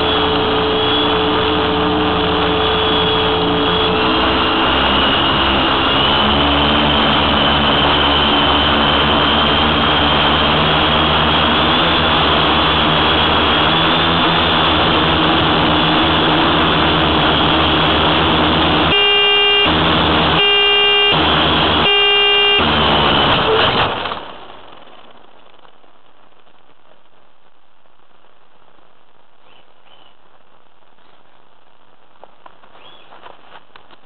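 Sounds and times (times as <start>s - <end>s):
long beeps: 0.0s - 9.6s, 18.8s - 23.8s
drone motors and propellers whining: 0.0s - 25.2s.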